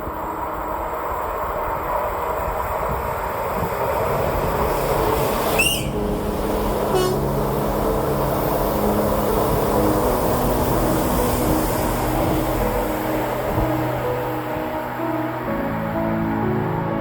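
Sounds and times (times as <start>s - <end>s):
train horn low notes: 6.8s - 7.5s.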